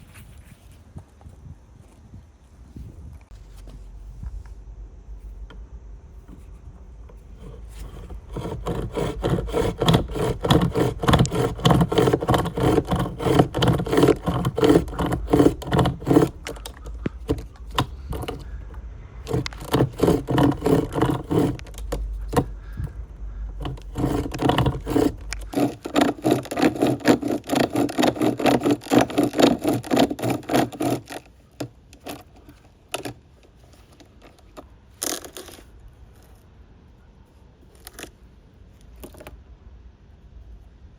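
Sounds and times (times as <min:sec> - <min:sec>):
wood being rasped: 0:07.2 - 0:33.2.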